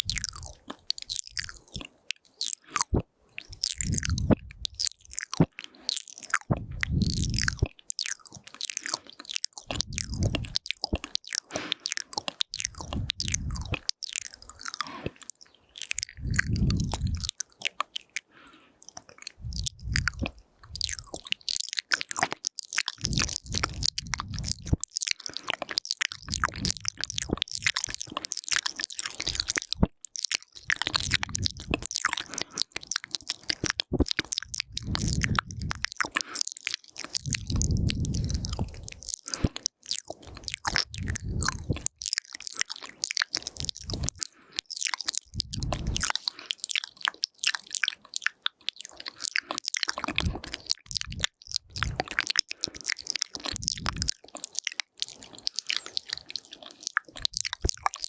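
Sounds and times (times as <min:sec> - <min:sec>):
wet mouth clicks and smacks: 0:00.0 - 0:58.0.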